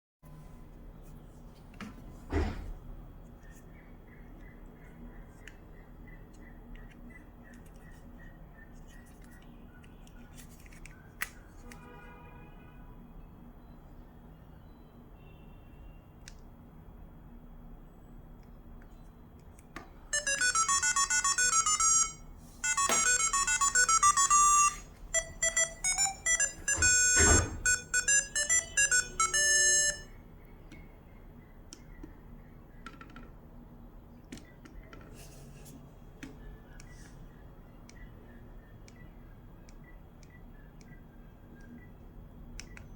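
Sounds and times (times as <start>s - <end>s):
electronic phone ringtone: 20.1s - 30.2s.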